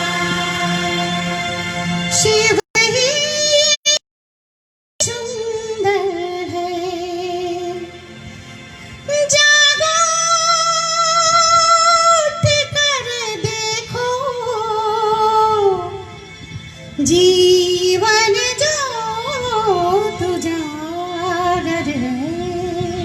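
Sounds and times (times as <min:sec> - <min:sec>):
woman singing with vibrato: 0:02.1 - 0:04.0, 0:09.1 - 0:16.2, 0:17.0 - 0:23.0.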